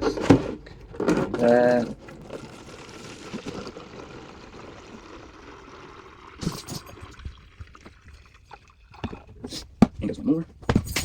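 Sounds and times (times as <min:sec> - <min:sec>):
juice pouring into plastic jug: 0:01.4 - 0:09.7.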